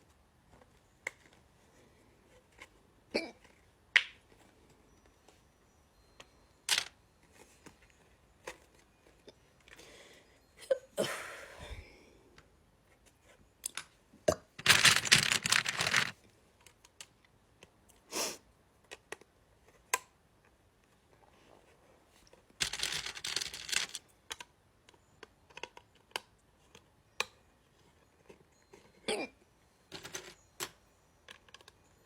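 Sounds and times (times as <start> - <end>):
rustling and handling noise: 6.2 - 9.8, 14.6 - 17.1, 20.8 - 24.0.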